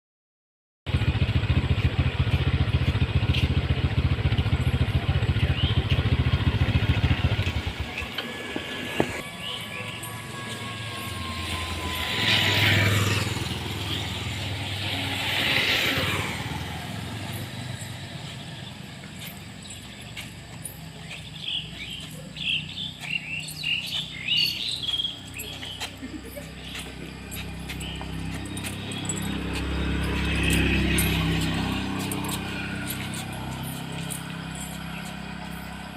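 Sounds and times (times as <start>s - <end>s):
vehicles passing on road: 0.9s - 35.9s.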